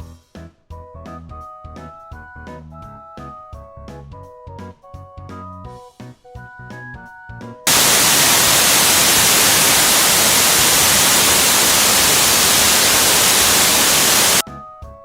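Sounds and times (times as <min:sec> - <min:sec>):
white noise hiss: 0:07.7 - 0:14.4.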